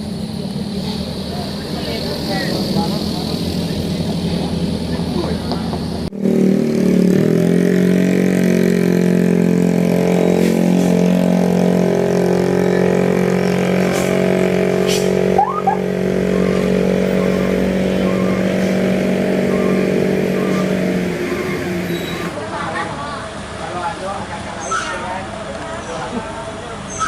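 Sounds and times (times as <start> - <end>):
heavy vehicle engine running: 0.0 - 26.9
brief rising squeak: 21.8 - 22.4.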